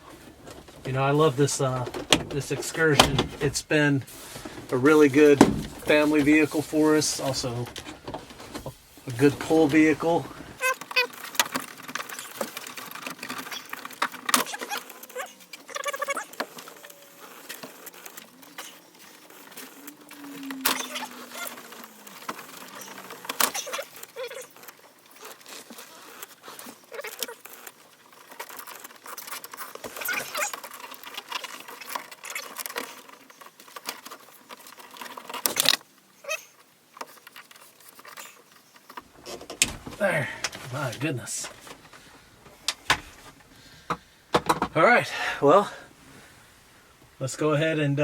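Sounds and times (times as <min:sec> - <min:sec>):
plastic trim clicking and rattling: 0:00.1 - 0:03.7, 0:04.5 - 0:06.4.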